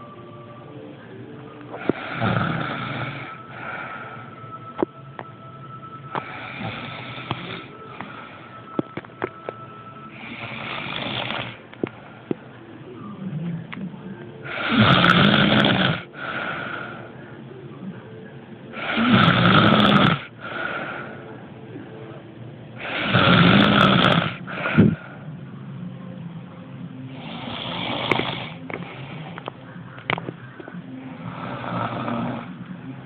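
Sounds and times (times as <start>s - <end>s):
person snoring: 1.7s - 4.3s, 6.2s - 8.6s, 10.1s - 11.6s, 14.4s - 17.2s, 18.7s - 21.3s, 22.8s - 25.2s, 27.1s - 29.4s, 31.0s - 32.6s.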